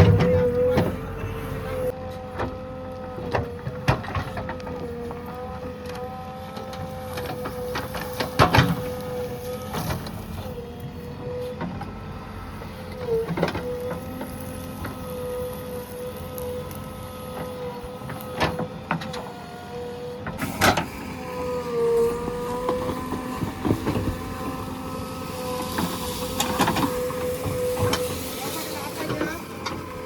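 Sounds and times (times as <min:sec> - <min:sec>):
knocks and clanks: 0:00.0 - 0:01.3
backhoe motor whine: 0:00.0 - 0:30.0.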